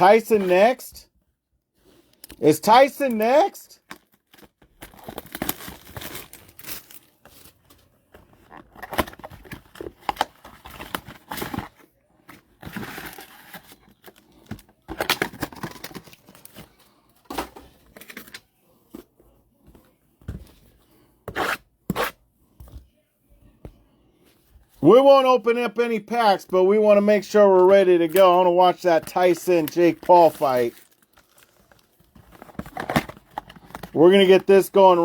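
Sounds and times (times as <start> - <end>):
plastic wrapping crinkling and tearing: 3.8 - 7.6, 29.0 - 34.0.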